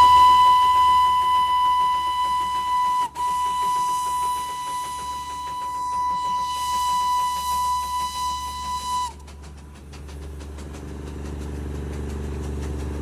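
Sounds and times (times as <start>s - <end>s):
train whistle: 0.0s - 9.3s
locomotive engine humming: 0.0s - 13.0s.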